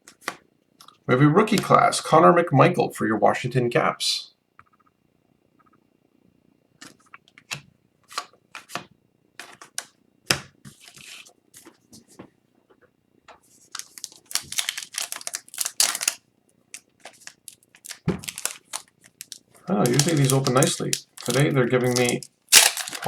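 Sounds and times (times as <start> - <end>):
foil wrapper tearing and crinkling: 13.7 - 23.0
cards snapping and clicking: 16.8 - 23.0.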